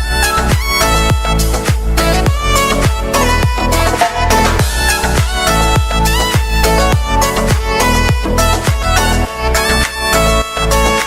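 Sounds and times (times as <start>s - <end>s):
beat-driven music: 0.0s - 11.0s.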